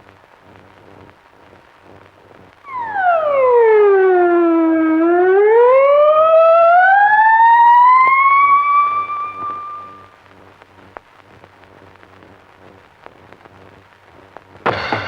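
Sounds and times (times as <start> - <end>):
siren-like wailing tone: 2.7 - 10.2.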